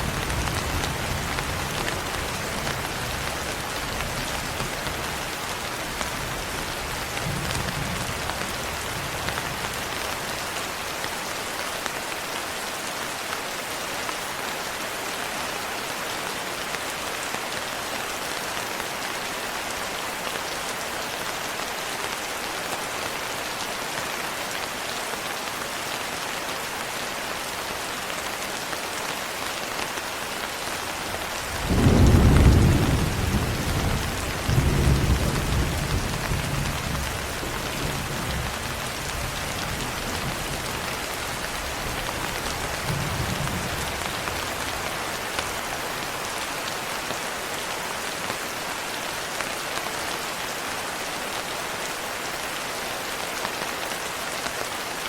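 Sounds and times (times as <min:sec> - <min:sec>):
steady rain falling: 0:00.0 - 0:55.0
rolling thunder: 0:31.5 - 0:37.0.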